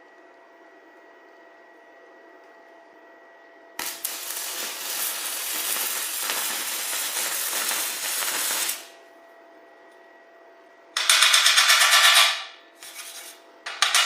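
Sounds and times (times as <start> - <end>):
faint machine whine: 0.0 - 14.0
welding arc crackling: 3.8 - 9.0.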